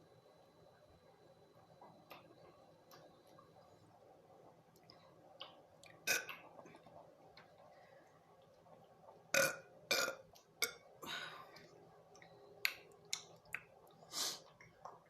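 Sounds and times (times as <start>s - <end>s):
woman burping loudly: 9.3s - 10.8s.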